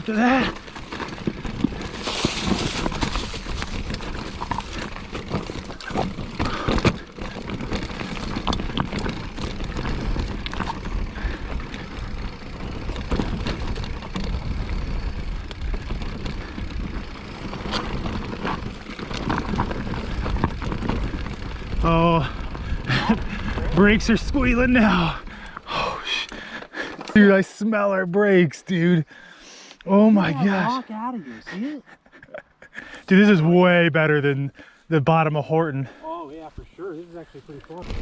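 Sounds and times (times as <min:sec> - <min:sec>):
bike tyres rumbling over rock: 0:00.0 - 0:27.4, 0:37.7 - 0:38.0
bike knocks and rattles: 0:00.1 - 0:24.7, 0:37.7 - 0:38.0.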